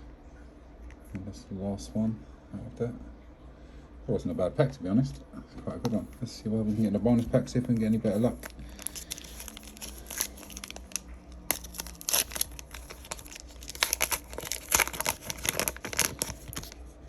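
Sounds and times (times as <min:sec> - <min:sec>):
wrapper crinkling and tearing: 0:07.8 - 0:16.8.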